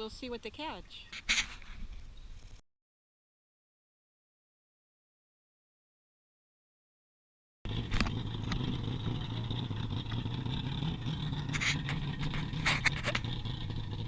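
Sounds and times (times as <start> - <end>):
engine humming: 7.7 - 14.0.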